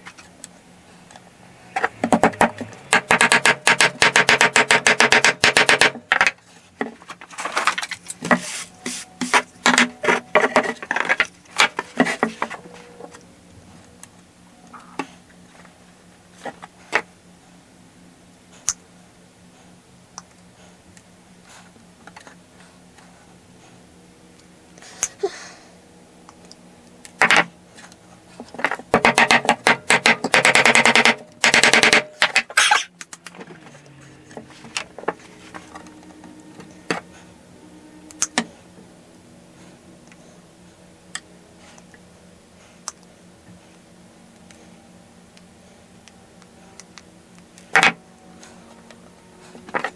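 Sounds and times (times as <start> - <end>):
faint steady hum: 0.0 - 49.9.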